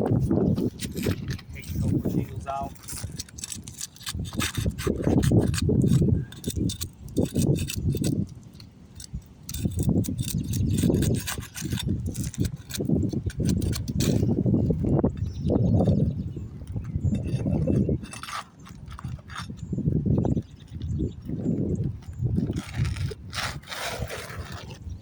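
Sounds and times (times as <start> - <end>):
wind buffeting microphone: 0.0 - 25.0
roof shingles being pried off: 2.6 - 8.3, 9.0 - 14.3.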